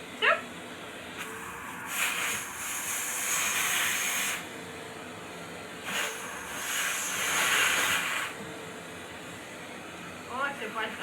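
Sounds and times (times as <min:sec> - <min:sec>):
vacuum cleaner airflow hiss: 0:01.1 - 0:04.6, 0:05.6 - 0:08.4.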